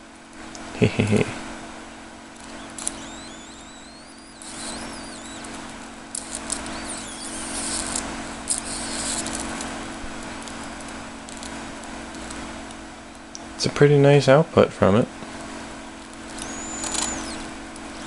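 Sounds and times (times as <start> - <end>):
electrical hum: 0.0 - 18.0
crackling electric arc with whine: 2.2 - 13.9, 15.3 - 18.0.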